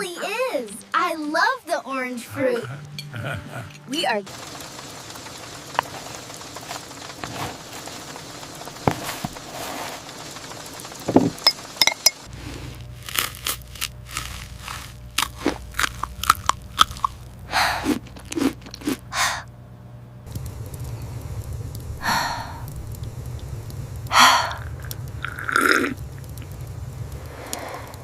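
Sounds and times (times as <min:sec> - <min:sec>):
person chewing crunchy food: 0:12.2 - 0:19.5, 0:24.2 - 0:26.0.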